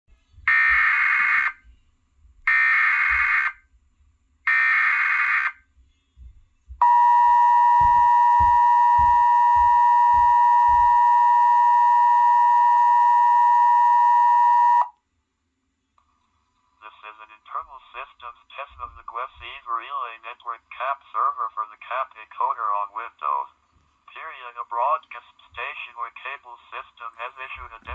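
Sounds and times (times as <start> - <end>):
two-tone attention alarm: 0.5 - 1.6, 2.5 - 3.6, 4.5 - 5.6, 6.8 - 14.9.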